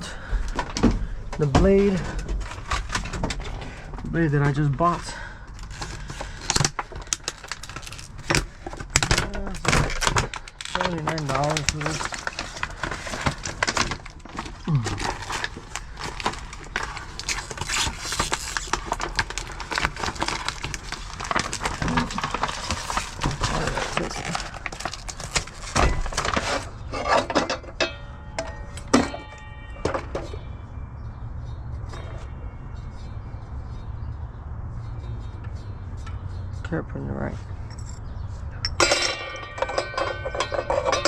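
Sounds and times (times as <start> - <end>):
metal objects clattering and clinking: 5.6 - 30.5, 37.6 - 41.0.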